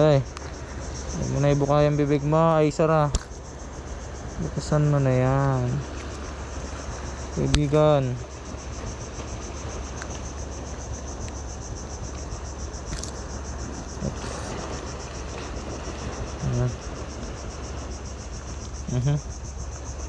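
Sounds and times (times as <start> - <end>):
insects chirping: 0.0 - 20.0
person murmuring: 14.0 - 14.6, 16.4 - 16.8, 18.8 - 19.3.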